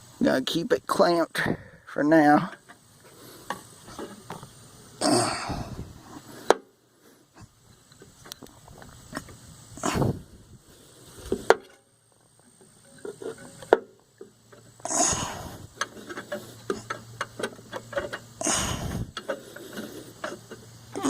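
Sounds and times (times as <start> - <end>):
tools clicking and knocking: 15.8 - 18.4.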